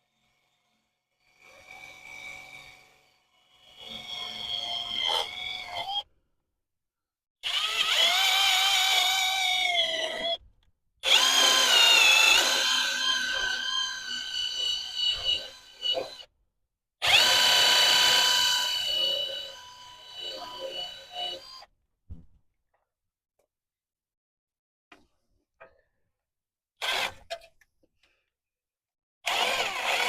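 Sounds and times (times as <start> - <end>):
power tool motor whining: 7.4 - 10.4, 11.0 - 16.3, 17.0 - 21.6, 29.3 - 30.0.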